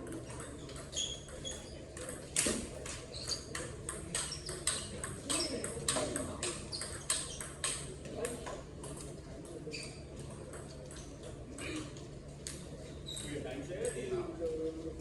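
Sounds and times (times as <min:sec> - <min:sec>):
table tennis ball clicking: 0:00.1 - 0:09.0.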